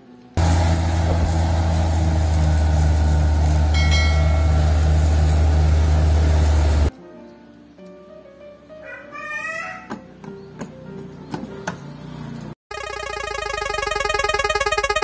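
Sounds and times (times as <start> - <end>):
bulldozer diesel engine running: 0.4 - 6.9
brief high-pitched tone: 3.8 - 4.8, 12.7 - 15.0.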